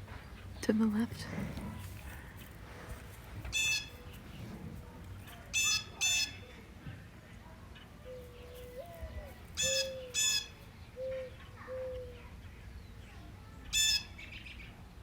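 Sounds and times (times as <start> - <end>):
bird squawking harshly: 3.5 - 3.9
dove cooing: 8.1 - 10.4.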